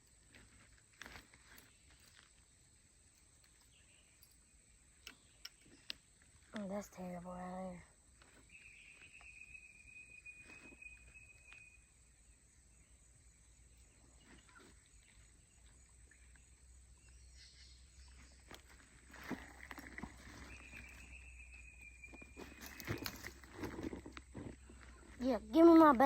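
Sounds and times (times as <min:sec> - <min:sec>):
light clicks and rustles: 0:22.4 - 0:25.2.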